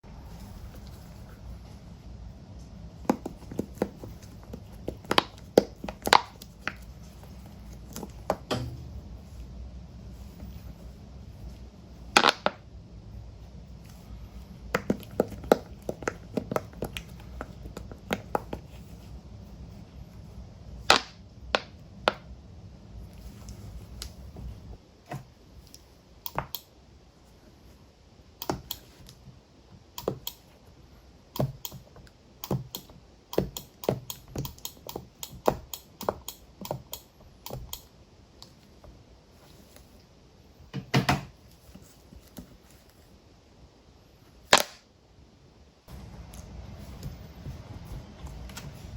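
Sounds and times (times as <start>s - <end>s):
low hum: 6.8s - 14.7s.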